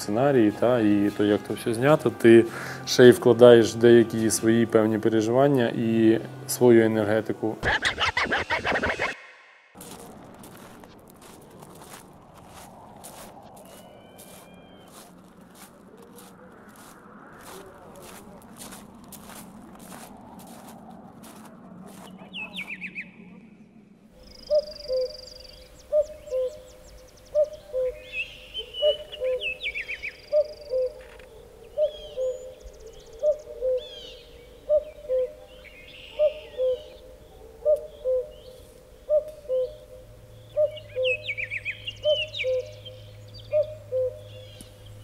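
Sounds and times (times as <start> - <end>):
small birds chirping and trilling: 11.2 - 45.0.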